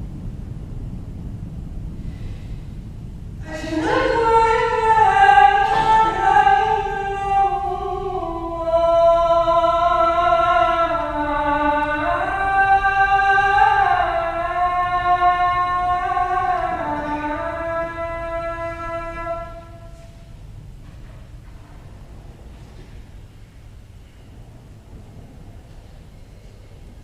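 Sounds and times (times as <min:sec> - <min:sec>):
choir singing sustained chords: 0:02.0 - 0:20.6.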